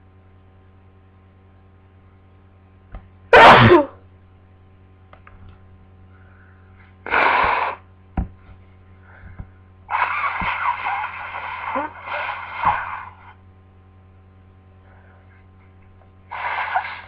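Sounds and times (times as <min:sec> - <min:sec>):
steady low hum: 0:00.0 - 0:17.0
person sneezing: 0:03.3 - 0:04.0, 0:07.0 - 0:07.8, 0:09.9 - 0:13.3, 0:16.3 - 0:17.0
breathy noise: 0:09.0 - 0:13.4, 0:16.3 - 0:17.0.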